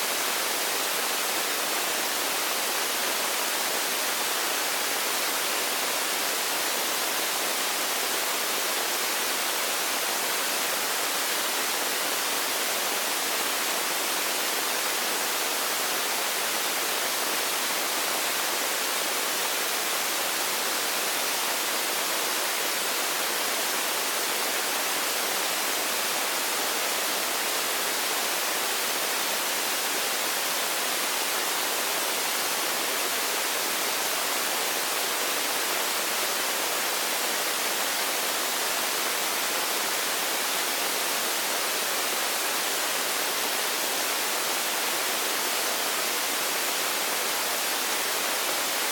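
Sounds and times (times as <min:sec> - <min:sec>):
loud steady static hiss: 0:00.0 - 0:48.9.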